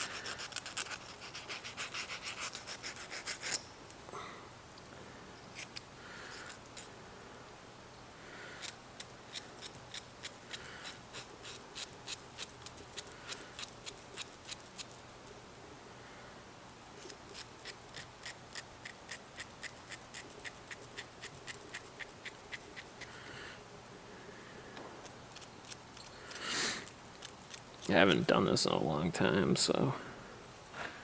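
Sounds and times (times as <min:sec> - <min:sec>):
needle file stroking metal: 0:00.0 - 0:03.7, 0:08.6 - 0:15.0, 0:17.0 - 0:23.2, 0:25.1 - 0:28.2.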